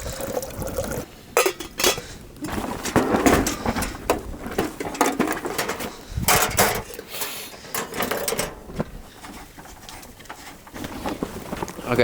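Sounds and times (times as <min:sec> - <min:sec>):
cookware knocking and rustling: 0:01.4 - 0:02.1, 0:02.8 - 0:06.9, 0:07.7 - 0:08.8.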